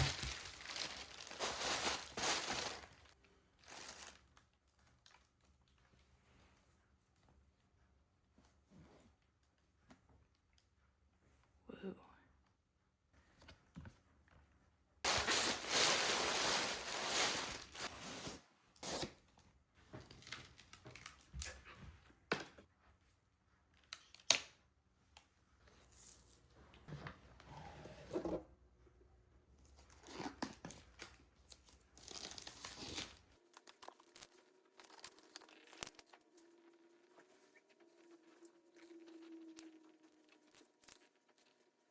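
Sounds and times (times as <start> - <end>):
packaging tearing and rustling: 0.0 - 4.2, 15.1 - 19.1, 32.0 - 36.2.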